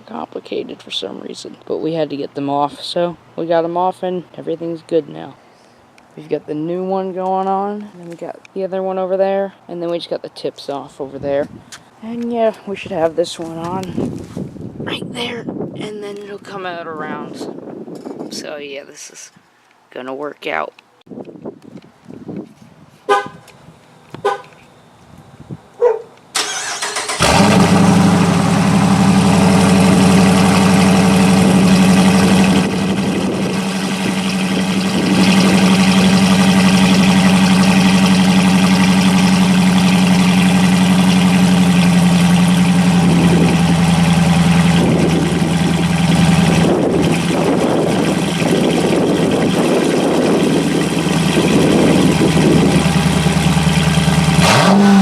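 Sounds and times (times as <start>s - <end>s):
car engine starting and idling: 26.3s - 55.0s.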